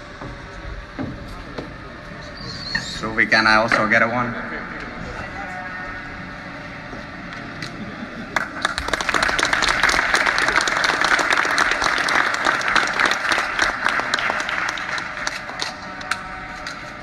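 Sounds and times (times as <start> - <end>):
crowd applauding: 8.3 - 16.8.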